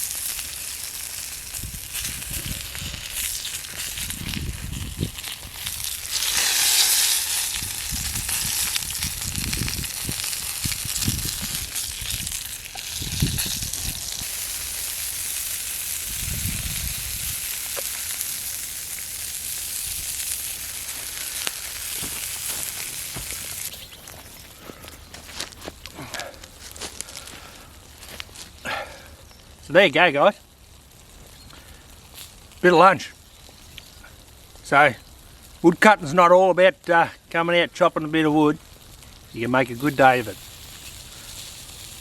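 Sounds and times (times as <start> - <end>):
food sizzling in a pan: 0.0 - 24.0, 38.2 - 42.0.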